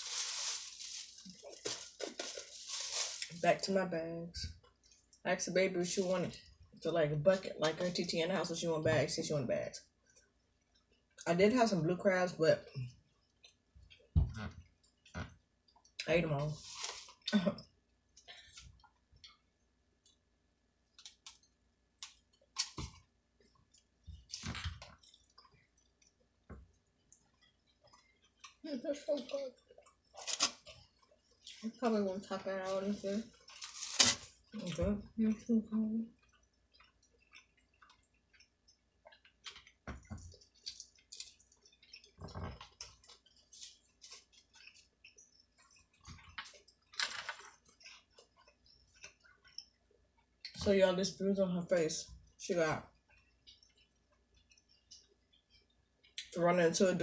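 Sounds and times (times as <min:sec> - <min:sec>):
wet chewing and mouth noises: 0:04.5 - 0:05.3, 0:09.8 - 0:11.3, 0:12.6 - 0:16.1, 0:16.7 - 0:31.8, 0:33.3 - 0:50.6, 0:52.2 - 0:56.4
eating crunches and crackles: 0:20.9 - 0:31.7, 0:36.1 - 0:50.6, 0:52.3 - 0:56.4
loud eating crunch: 0:36.1 - 0:49.8.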